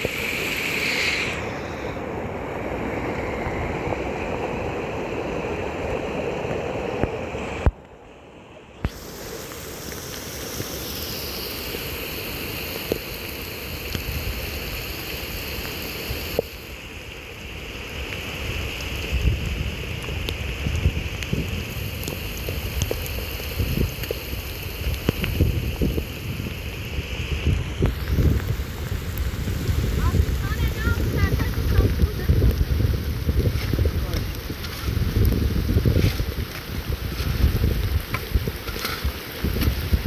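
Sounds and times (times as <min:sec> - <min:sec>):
heavy rain falling: 0:08.9 - 0:40.0.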